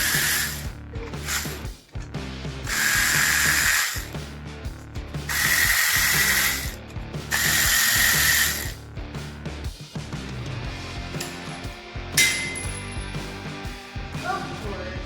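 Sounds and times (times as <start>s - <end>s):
power tool spinning bolts: 0.0s - 1.7s, 2.6s - 4.2s, 5.2s - 8.8s
background music: 0.0s - 15.0s.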